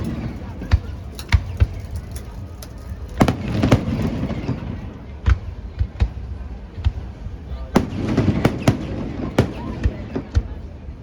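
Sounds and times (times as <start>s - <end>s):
fireworks booming: 3.2s - 11.0s.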